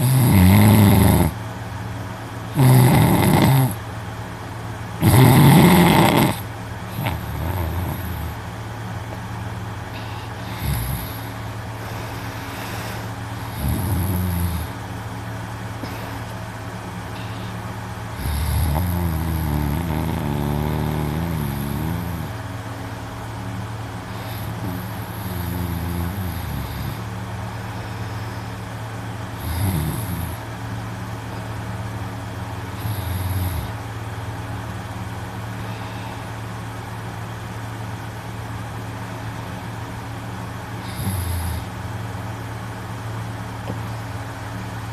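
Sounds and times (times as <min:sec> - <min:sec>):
man snoring loudly: 0:00.0 - 0:01.4, 0:02.5 - 0:03.8, 0:05.0 - 0:08.4, 0:09.9 - 0:14.9, 0:17.1 - 0:22.4, 0:24.0 - 0:28.6, 0:29.3 - 0:30.5, 0:32.7 - 0:33.8, 0:40.8 - 0:41.8
steady low hum: 0:00.0 - 0:44.9.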